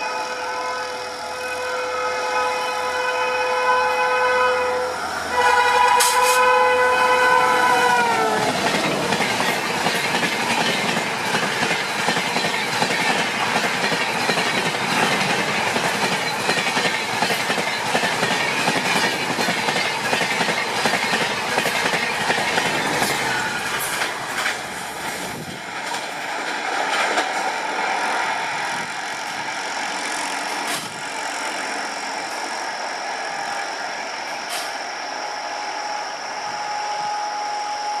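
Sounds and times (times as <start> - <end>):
train coaches rushing past: 0.0 - 38.0
wheels clattering over rail joints: 8.2 - 27.7.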